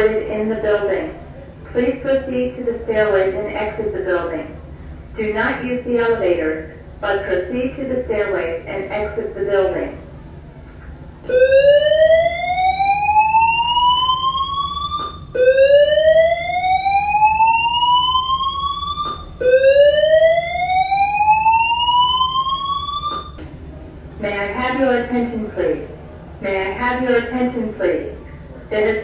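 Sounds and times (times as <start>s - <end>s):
fire alarm slow-whoop tone: 11.3s - 23.4s.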